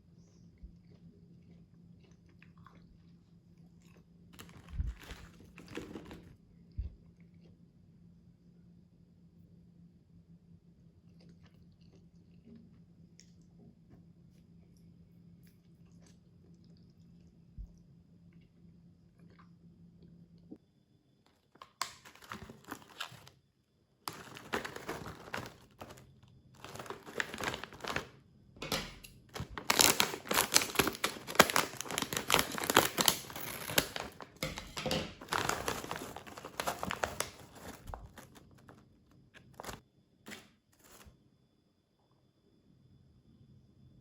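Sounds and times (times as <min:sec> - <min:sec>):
plastic snack packet crinkling: 0:04.4 - 0:06.4, 0:21.6 - 0:23.4, 0:24.1 - 0:41.1.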